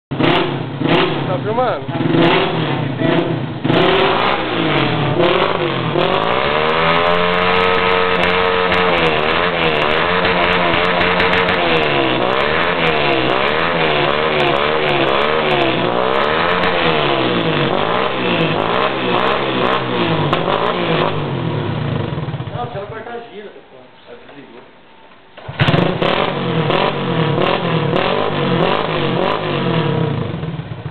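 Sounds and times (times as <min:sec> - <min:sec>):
exhaust crackling and popping: 0:00.1 - 0:21.4
motorcycle engine revving: 0:00.1 - 0:22.9, 0:25.4 - 0:30.9.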